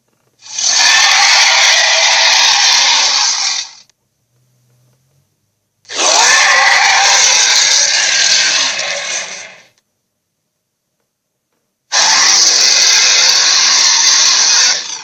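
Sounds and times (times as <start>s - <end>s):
monster roar: 0.4s - 3.8s, 5.9s - 9.7s, 11.9s - 15.0s.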